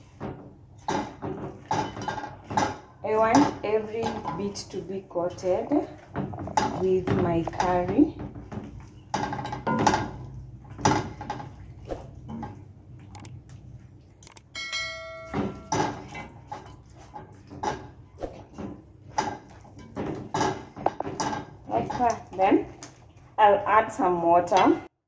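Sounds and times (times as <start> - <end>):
spoon knocking and scraping pot: 0.0 - 11.5, 14.6 - 22.4
short metallic ringing tone: 14.6 - 15.8.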